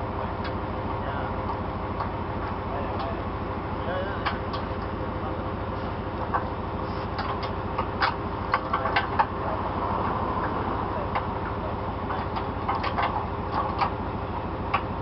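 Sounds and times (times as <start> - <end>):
diesel engine idling: 0.0 - 15.0
sharp metallic clicks and knocks: 7.1 - 9.4, 10.0 - 14.0.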